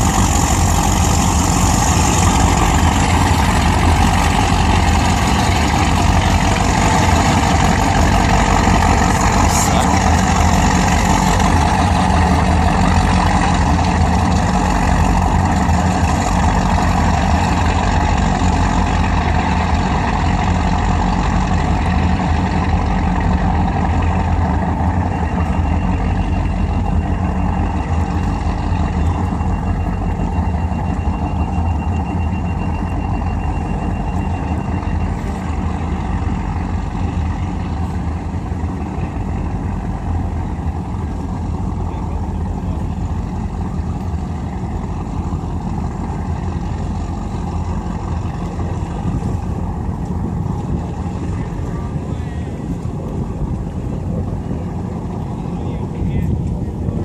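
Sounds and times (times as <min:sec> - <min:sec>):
boat engines idling: 0:00.0 - 0:57.0.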